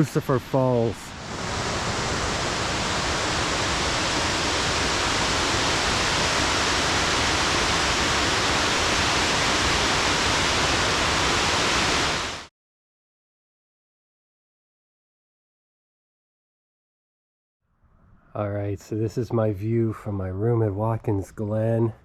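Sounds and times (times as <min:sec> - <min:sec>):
waterfall rushing: 0:00.6 - 0:12.5.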